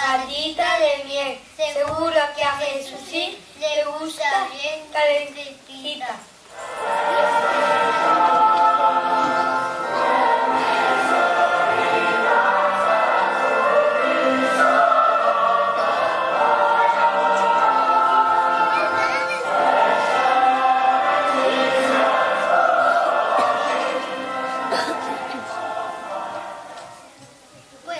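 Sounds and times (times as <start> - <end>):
choir singing held notes: 6.5 - 27.2.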